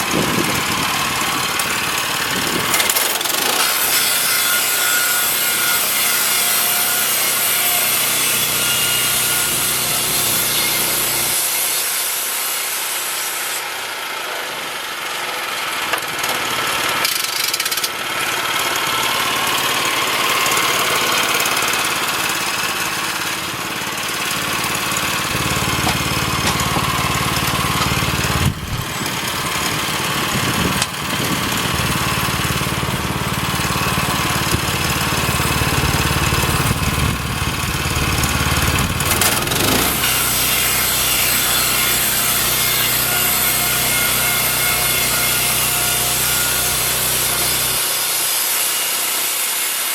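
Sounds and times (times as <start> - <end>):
saw blade cutting log: 0.1 - 14.0, 16.0 - 49.9
gas engine running: 19.1 - 40.5.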